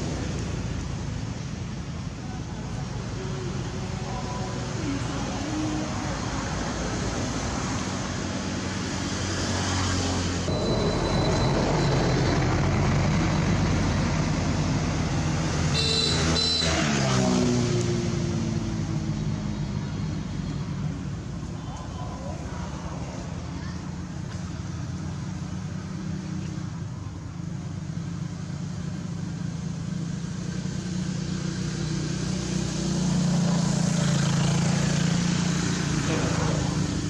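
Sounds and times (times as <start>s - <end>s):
road traffic noise: 0.0s - 37.0s
vehicle engines running: 0.0s - 37.0s
vehicle passing by: 3.6s - 26.8s, 27.8s - 37.0s
high squeal: 10.5s - 13.4s.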